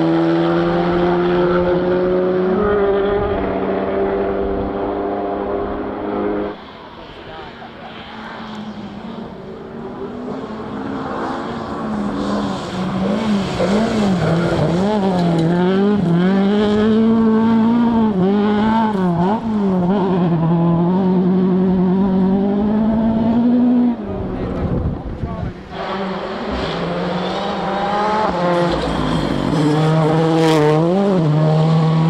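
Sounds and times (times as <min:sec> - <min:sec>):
rally car engine revving: 0:00.0 - 0:32.0.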